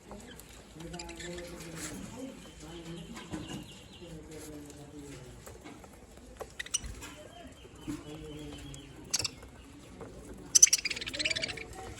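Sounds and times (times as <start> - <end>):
budgerigars chirping: 6.6 - 7.1, 7.9 - 9.6, 10.5 - 11.9.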